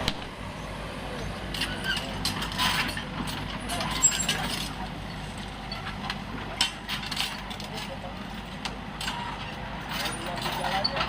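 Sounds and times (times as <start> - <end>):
mini excavator engine hum: 0.0 - 11.0.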